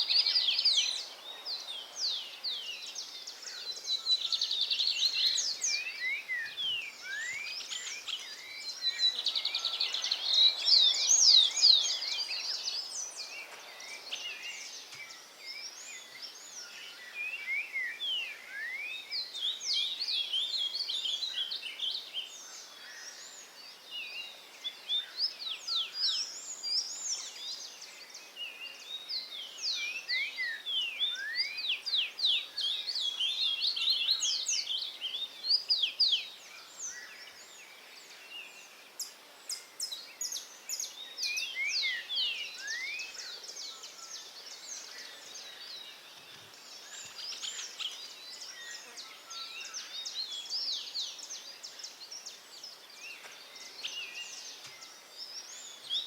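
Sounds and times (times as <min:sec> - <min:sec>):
songbirds chirping and whistling: 0:00.0 - 0:56.0.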